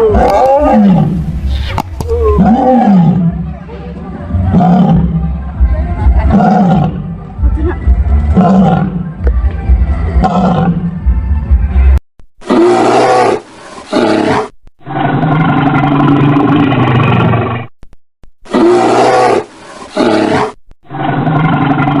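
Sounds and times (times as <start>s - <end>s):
large animal roaring: 0.0s - 3.4s, 10.2s - 10.9s, 12.4s - 17.7s, 18.5s - 22.0s.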